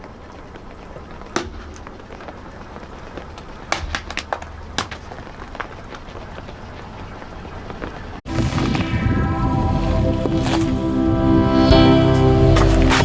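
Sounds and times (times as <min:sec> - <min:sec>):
tyre crushing brittle objects: 0:01.3 - 0:06.1
low rumble: 0:08.3 - 0:13.0.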